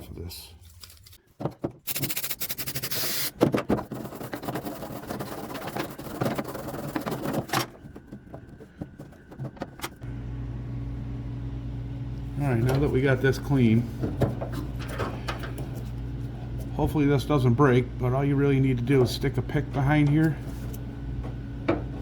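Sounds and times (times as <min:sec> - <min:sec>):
brush scrubbing metal: 0:01.9 - 0:09.8
steady low hum: 0:03.8 - 0:22.0.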